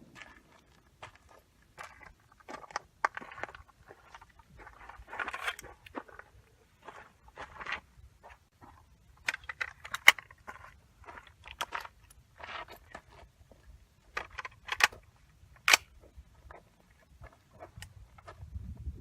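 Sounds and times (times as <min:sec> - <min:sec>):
handling noise clicks and rattles: 0:09.2 - 0:13.2, 0:14.1 - 0:18.4.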